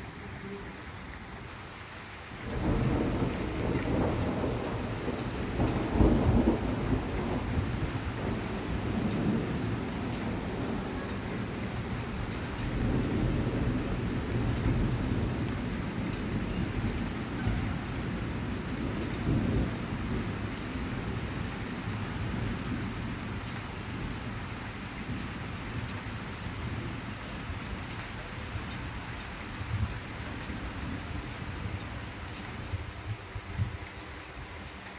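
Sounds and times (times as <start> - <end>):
steady rainfall: 0.0 - 34.9
rolling thunder: 2.4 - 21.5.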